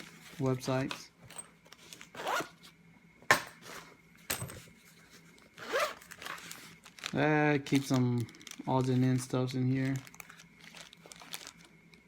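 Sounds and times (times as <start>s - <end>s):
bag zipper being pulled: 2.1s - 2.5s, 5.6s - 6.4s.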